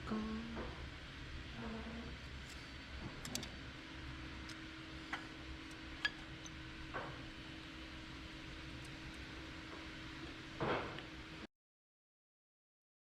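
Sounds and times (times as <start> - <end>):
steady low hum: 0.0 - 11.5.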